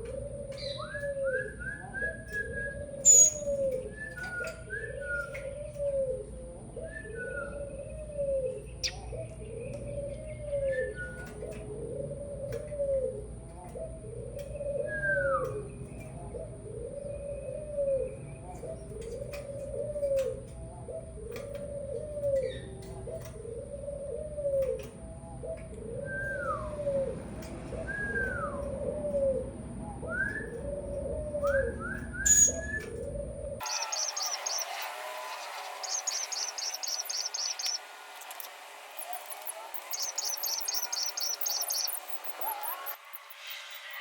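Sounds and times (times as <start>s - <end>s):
dove cooing: 0.0s - 34.7s
falling whistled bird notes: 0.6s - 5.7s, 31.4s - 32.9s, 33.6s - 44.0s.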